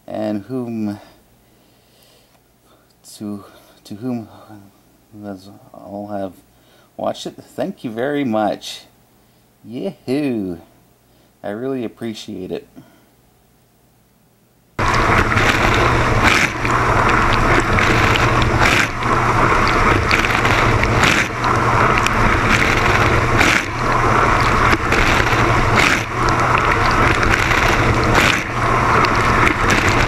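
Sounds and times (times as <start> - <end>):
dishwasher pump hum: 14.8 - 30.0
water spraying and sloshing: 14.8 - 30.0.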